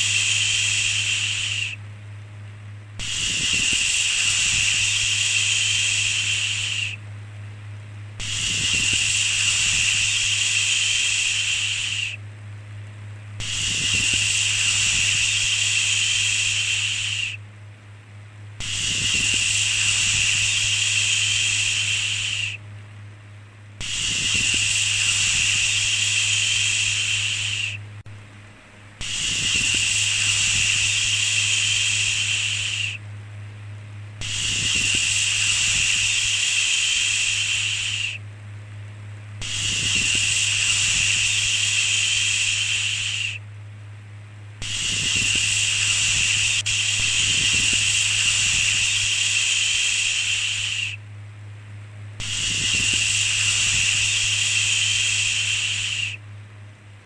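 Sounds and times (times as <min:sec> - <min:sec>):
person shushing: 0:03.0 - 0:07.0, 0:18.6 - 0:22.6, 0:23.8 - 0:27.8, 0:29.0 - 0:33.0, 0:44.6 - 0:51.0.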